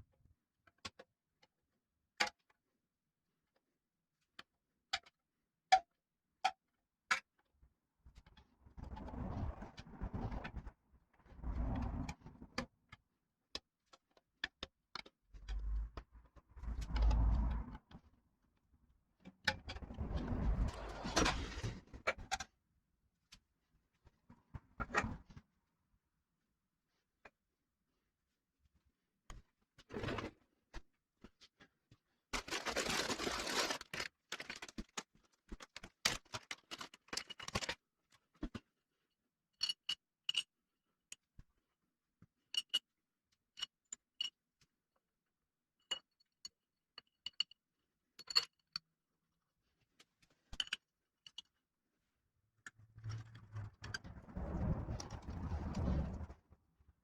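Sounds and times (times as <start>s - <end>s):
rustling and scraping: 32.4s - 37.8s.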